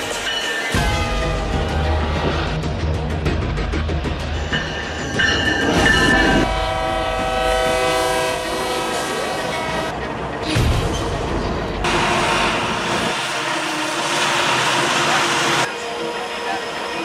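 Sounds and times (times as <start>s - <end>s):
locomotive air horn: 0.8s - 2.6s, 6.2s - 10.1s
diesel locomotive rumble: 0.8s - 17.0s.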